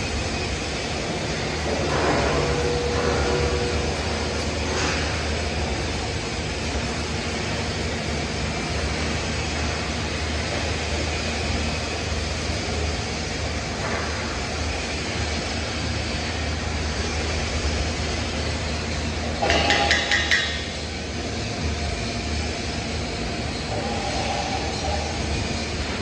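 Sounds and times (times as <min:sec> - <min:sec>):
low electrical hum: 0:00.0 - 0:15.8
welding hiss: 0:00.0 - 0:26.0.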